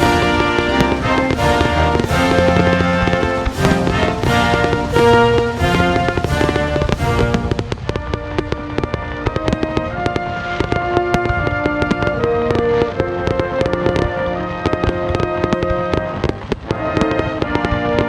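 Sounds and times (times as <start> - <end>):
fireworks bursting and crackling: 0.0 - 18.0
music of long held notes: 0.0 - 18.0.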